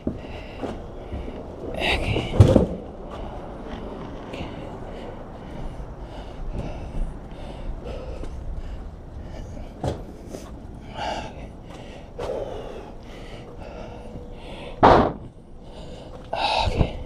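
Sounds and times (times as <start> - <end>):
man breathing heavily: 0.0 - 17.0
loud sharp thump: 14.8 - 15.3.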